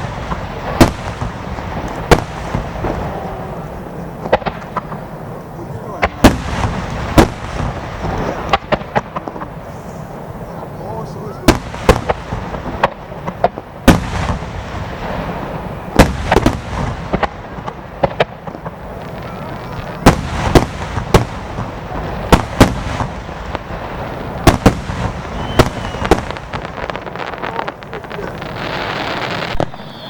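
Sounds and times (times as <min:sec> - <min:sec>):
fireworks booming: 0:00.0 - 0:30.0
fireworks crackling and rumbling: 0:00.0 - 0:30.0.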